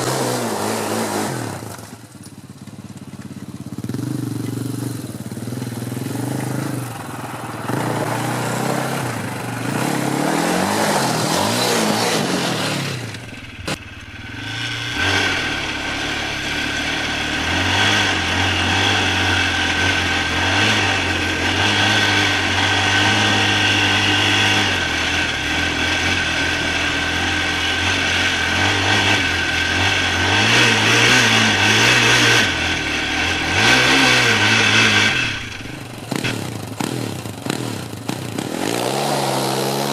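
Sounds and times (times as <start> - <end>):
atv engine revving: 0.0 - 39.9.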